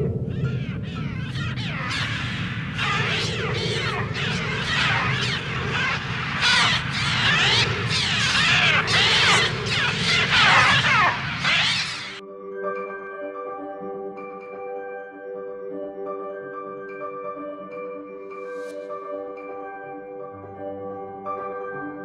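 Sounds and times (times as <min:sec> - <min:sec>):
flock of gulls shrieking: 0:00.0 - 0:12.2
steady low rumble: 0:00.0 - 0:12.2.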